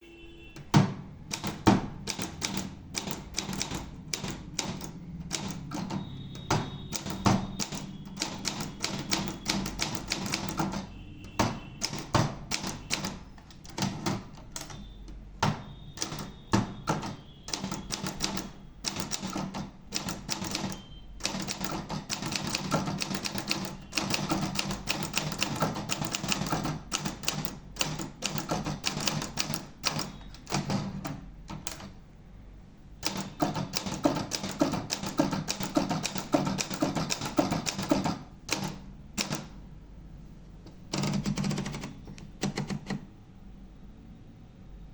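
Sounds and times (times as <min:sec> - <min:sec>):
manual typewriter keys clacking: 0:00.6 - 0:32.0, 0:33.0 - 0:39.6, 0:40.8 - 0:43.1.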